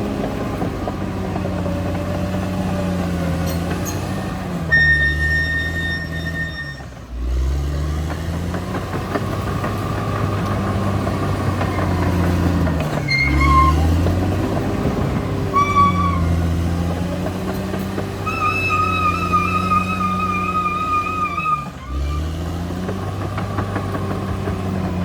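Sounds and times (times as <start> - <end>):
bulldozer diesel engine running: 0.0 - 25.0
short high-pitched tones: 4.7 - 6.9.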